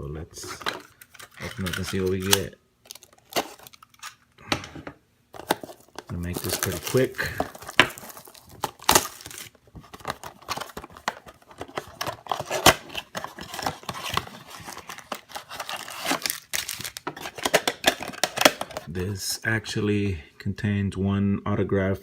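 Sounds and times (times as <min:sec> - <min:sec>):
plastic wrap crinkling: 0:00.8 - 0:04.3, 0:05.3 - 0:18.9
cardboard tearing: 0:05.4 - 0:18.7.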